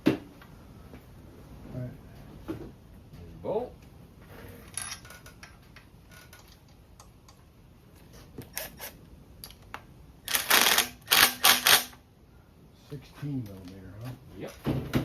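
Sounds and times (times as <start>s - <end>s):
loud clattering bursts: 10.3s - 12.0s.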